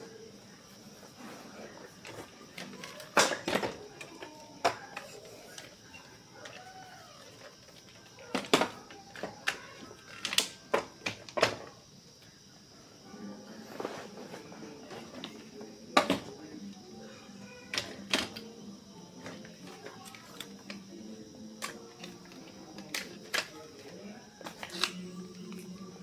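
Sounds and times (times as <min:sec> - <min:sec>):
small hard objects clicking: 0:21.6 - 0:25.8.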